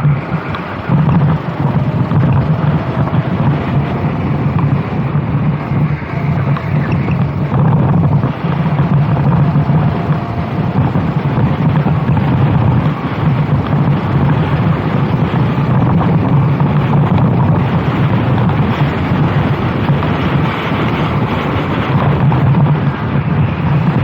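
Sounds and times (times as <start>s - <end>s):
kart engine running hard: 0.0s - 24.0s
wind buffeting microphone: 0.0s - 24.0s.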